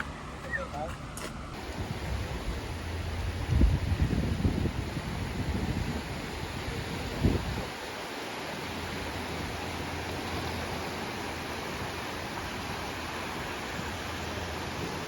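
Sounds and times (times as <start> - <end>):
wind and water rushing: 0.0 - 15.0
wind rumble on microphone: 1.6 - 15.0.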